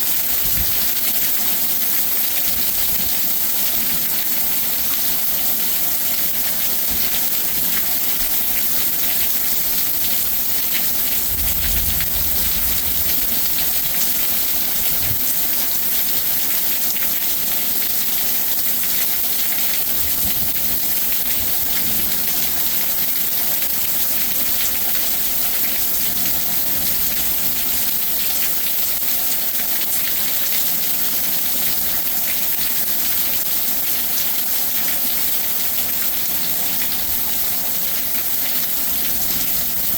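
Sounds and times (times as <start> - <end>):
heavy rain pouring: 6.2 - 29.9
low rumble: 11.2 - 13.9.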